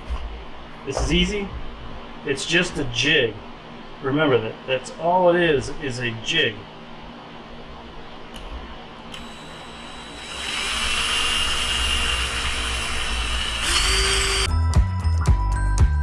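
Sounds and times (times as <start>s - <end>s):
power drill whining: 9.2s - 14.5s.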